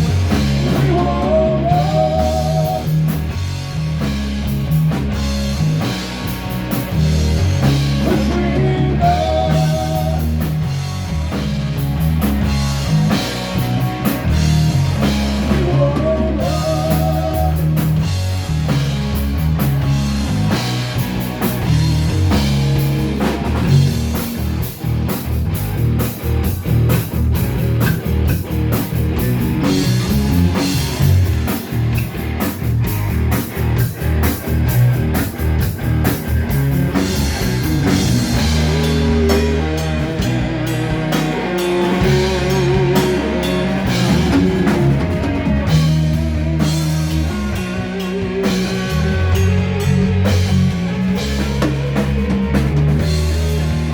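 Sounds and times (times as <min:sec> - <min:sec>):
live rock band playing: 0:00.0 - 0:53.9.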